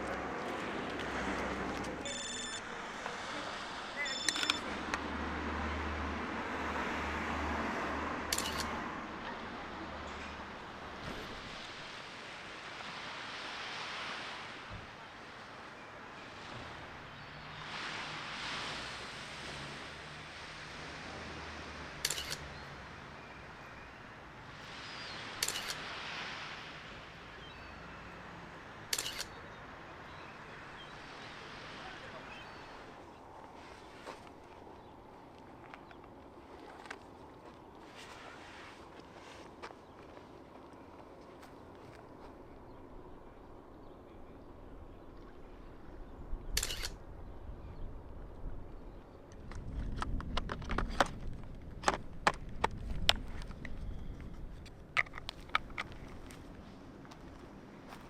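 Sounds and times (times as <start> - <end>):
camera shutter clicks: 8.3 - 8.8, 22.0 - 22.4, 25.4 - 25.8, 28.9 - 29.4, 46.6 - 47.0.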